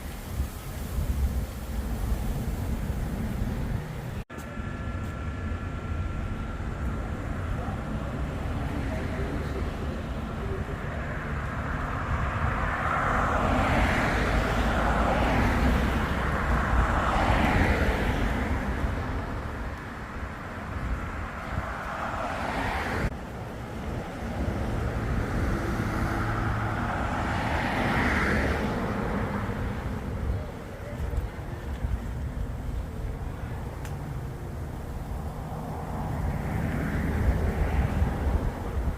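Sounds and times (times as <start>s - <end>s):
rushing water: 0.0s - 4.2s
wind noise: 0.0s - 4.2s, 4.8s - 38.9s
boat engine droning: 1.7s - 12.6s.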